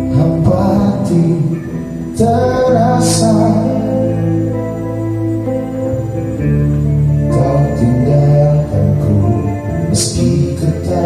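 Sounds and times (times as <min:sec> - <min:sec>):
live band playing held chords: 0:00.0 - 0:11.0.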